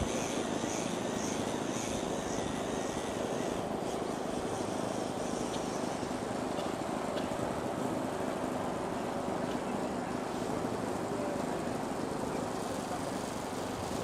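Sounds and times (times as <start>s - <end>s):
model aircraft motor whine: 0.0s - 6.5s
steady rushing noise: 0.0s - 14.0s.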